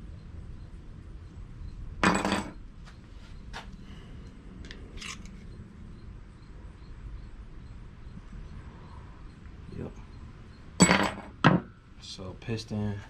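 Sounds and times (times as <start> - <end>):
metal parts clinking: 5.0 - 5.4.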